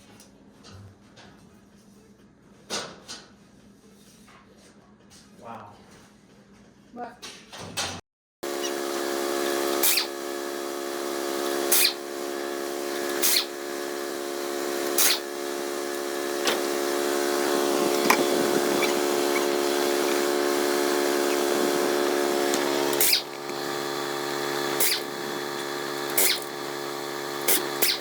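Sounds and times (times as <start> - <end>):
electric drill whining: 8.4 - 28.0.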